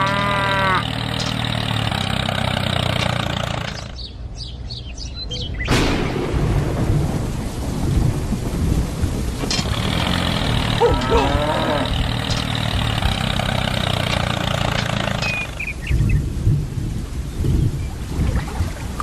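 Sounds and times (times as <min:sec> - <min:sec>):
loud rumbling noise: 0:00.0 - 0:04.0, 0:05.7 - 0:16.7
engine running: 0:00.0 - 0:04.4, 0:09.3 - 0:16.0.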